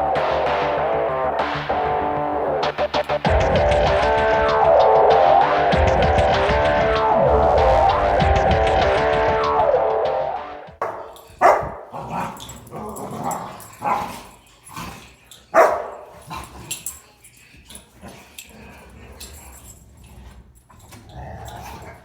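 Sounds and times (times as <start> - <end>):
dogs barking: 10.8 - 17.0
dogs growling: 10.8 - 22.0.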